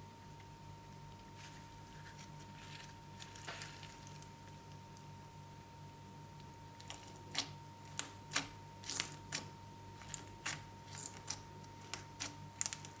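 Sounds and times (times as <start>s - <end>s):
slime crackling and popping: 6.8s - 13.0s.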